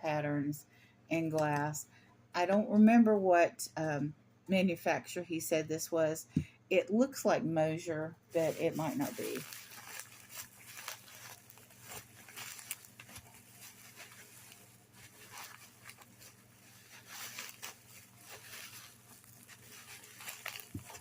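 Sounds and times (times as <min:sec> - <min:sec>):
low steady hum: 0:00.0 - 0:21.0
packing material rustling: 0:08.4 - 0:21.0.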